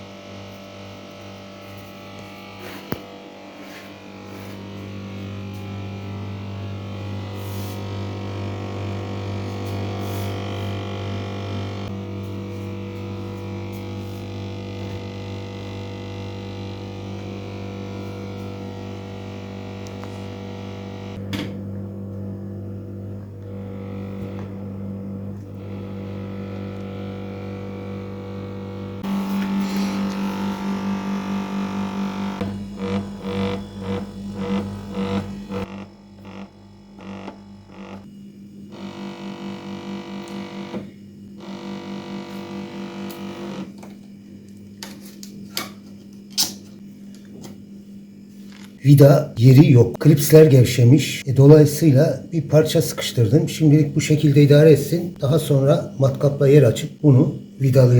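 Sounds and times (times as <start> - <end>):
rattling buzz: 0.0 - 21.7, 23.3 - 38.1
refrigerator humming: 0.0 - 57.9.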